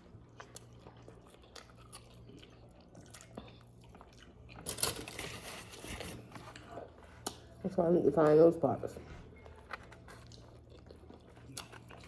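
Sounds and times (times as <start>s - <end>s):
chewing meat: 0.0s - 7.6s, 9.3s - 12.0s.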